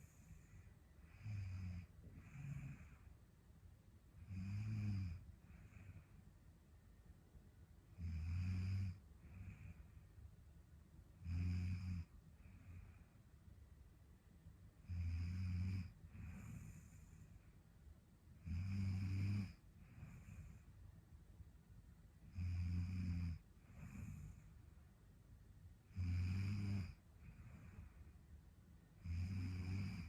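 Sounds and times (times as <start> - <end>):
soft breath: 0.0 - 3.6, 5.1 - 7.0, 8.9 - 11.2, 11.9 - 13.9, 15.8 - 18.2, 19.4 - 21.4, 23.4 - 25.0, 26.8 - 30.0
low rattling snores: 4.2 - 5.9, 8.0 - 9.7, 11.2 - 12.1, 14.8 - 17.0, 18.4 - 20.5, 22.3 - 24.4, 25.9 - 27.8, 29.0 - 30.0.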